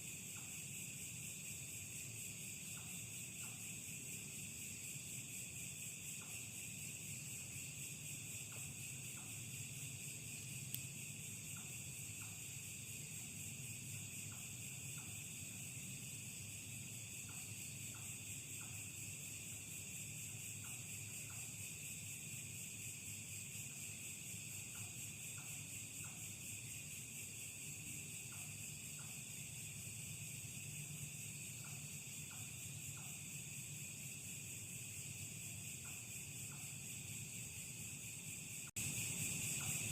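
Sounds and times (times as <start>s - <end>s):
crickets droning: 0.0s - 39.9s
faint ticks: 0.2s - 1.0s, 2.6s - 3.8s, 6.1s - 6.6s, 7.4s - 16.0s, 16.8s - 21.8s, 23.4s - 27.1s, 27.8s - 33.8s, 34.6s - 39.9s.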